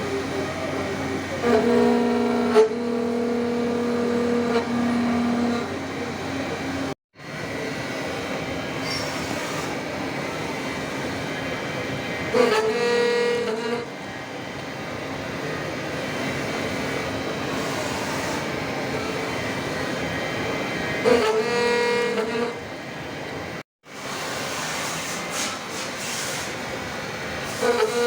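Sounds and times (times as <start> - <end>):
milling machine cutting steel: 0.0 - 28.0.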